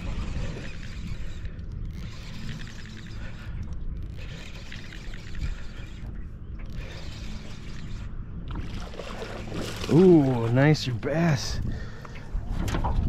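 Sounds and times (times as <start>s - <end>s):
fishing reel whirring and clicking: 0.0s - 10.4s.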